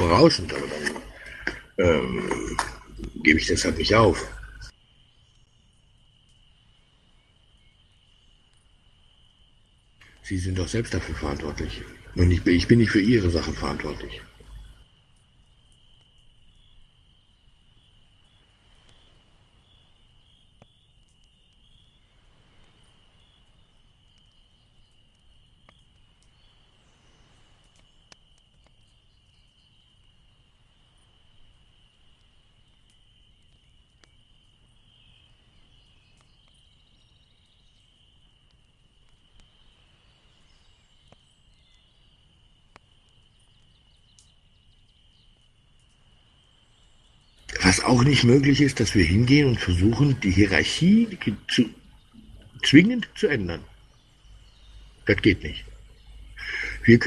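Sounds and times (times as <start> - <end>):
faint clicks: 0.0 - 6.5, 9.3 - 10.9, 20.1 - 21.9, 22.5 - 29.8, 30.9 - 34.9, 35.8 - 39.8, 41.0 - 46.6
faint high-pitched chirring: 0.0 - 57.0.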